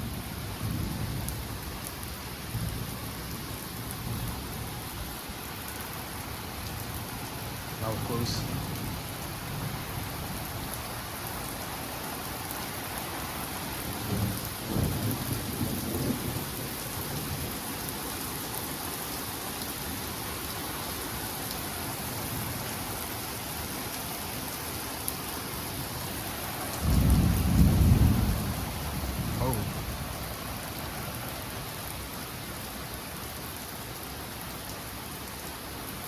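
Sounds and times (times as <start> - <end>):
steady rain falling: 0.0 - 36.0
thunder rumbling: 13.9 - 17.5, 26.7 - 30.2.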